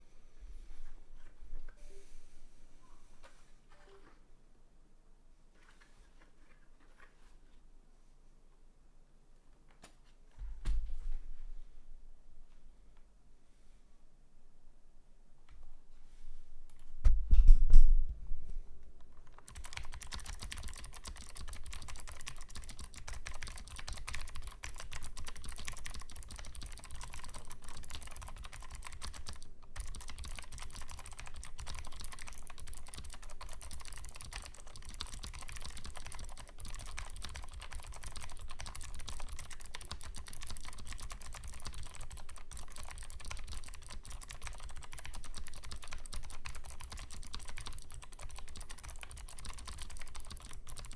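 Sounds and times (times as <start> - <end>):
fast typing on clicky keyboard: 19.2 - 50.9.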